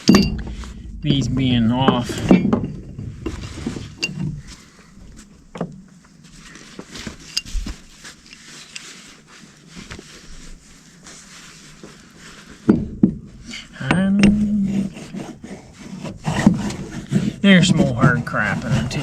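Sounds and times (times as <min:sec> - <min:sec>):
steel parts and tools clicking: 0:00.0 - 0:01.1.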